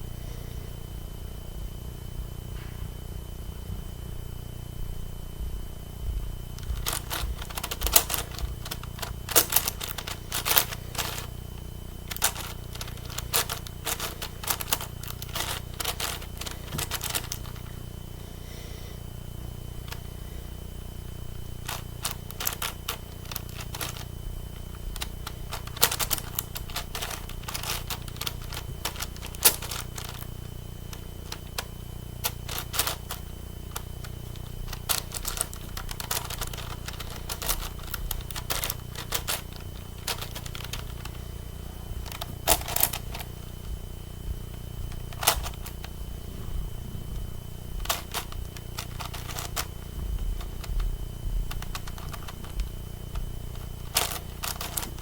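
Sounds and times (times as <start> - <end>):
low hum: 0.0 - 55.0
puzzle cube clicking: 6.6 - 11.3, 12.1 - 17.7, 21.6 - 30.3, 30.9 - 41.2, 42.0 - 43.3, 44.9 - 45.9, 47.8 - 49.7, 51.5 - 52.7, 53.6 - 55.0.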